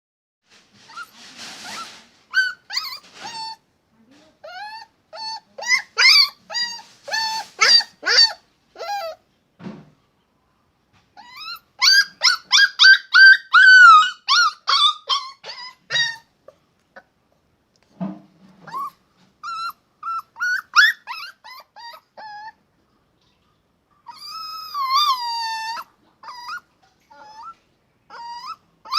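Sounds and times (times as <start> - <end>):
dog yipping and yelping: 0.8 - 3.6, 4.4 - 9.2, 11.2 - 16.3, 18.6 - 22.6, 24.0 - 28.9.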